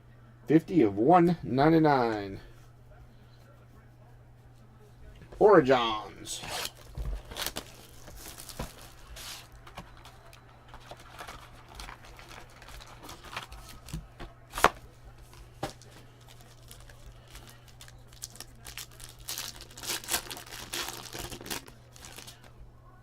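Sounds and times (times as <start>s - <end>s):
wrappers crinkling and tearing: 6.4s - 14.7s, 15.7s - 22.5s.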